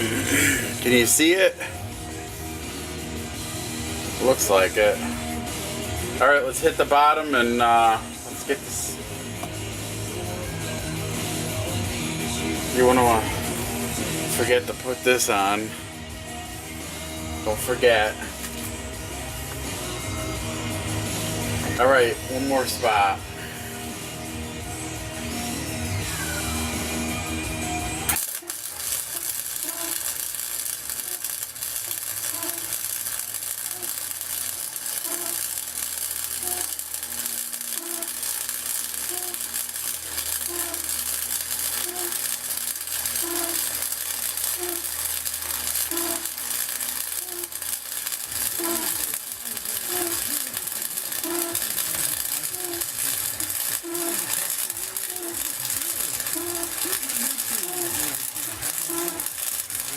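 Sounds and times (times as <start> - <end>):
arc welder crackling: 0.0 - 59.9
soft regular pulse: 28.2 - 59.9.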